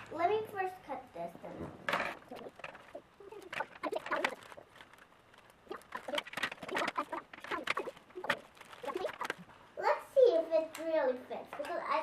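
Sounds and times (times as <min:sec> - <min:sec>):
plastic crinkling: 0:02.2 - 0:09.6.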